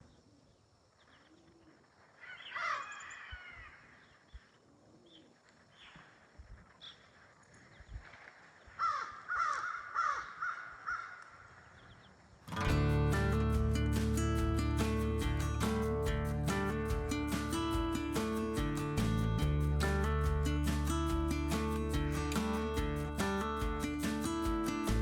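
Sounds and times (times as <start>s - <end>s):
harsh bird calls: 2.2s - 6.0s, 8.6s - 12.7s
music: 12.5s - 25.0s.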